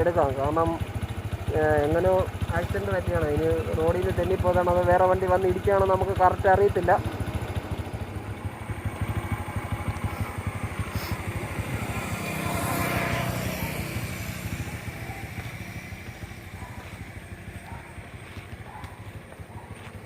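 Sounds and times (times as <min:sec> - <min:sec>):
motorcycle engine idling: 0:00.0 - 0:20.0
vehicle passing: 0:06.8 - 0:20.0.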